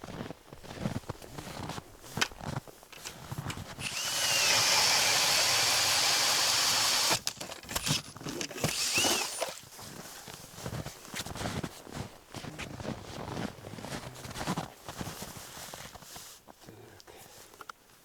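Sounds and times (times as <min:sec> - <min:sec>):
ice auger grinding hiss: 0:03.0 - 0:09.7.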